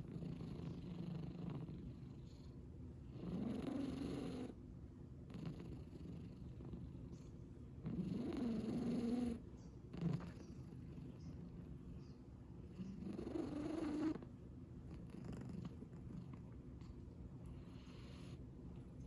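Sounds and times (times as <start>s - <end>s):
pet snoring: 0.0s - 4.6s, 5.3s - 6.8s, 7.8s - 11.1s, 12.8s - 14.2s, 14.9s - 16.4s, 17.6s - 18.4s.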